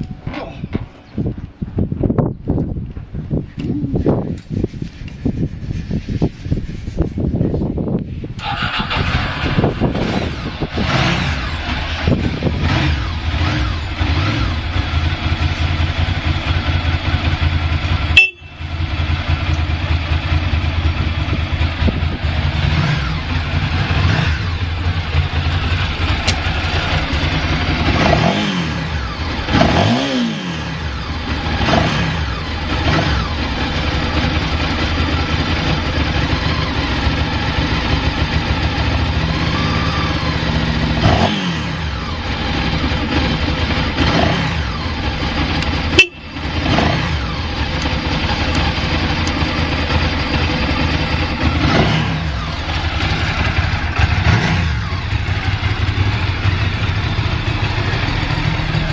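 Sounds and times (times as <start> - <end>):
motorcycle engine idling: 8.4 - 29.6, 30.8 - 41.0, 41.8 - 58.9
sharp click: 26.2 - 26.5.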